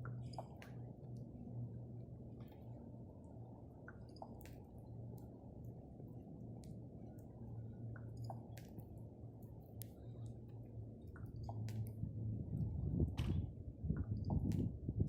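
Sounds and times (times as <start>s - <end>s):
low rumble: 11.7s - 15.0s.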